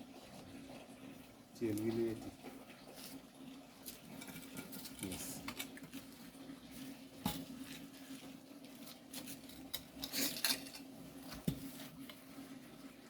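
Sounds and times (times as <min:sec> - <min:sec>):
garden tool scrapes and clinks: 0:08.8 - 0:11.9.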